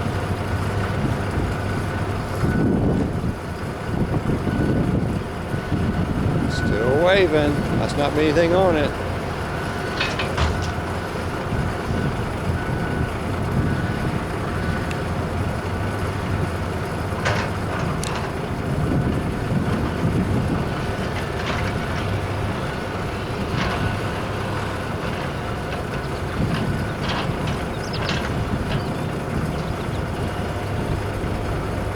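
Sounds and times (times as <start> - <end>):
diesel engine low rumble: 0.0 - 31.9
metallic clanks: 9.9 - 10.9.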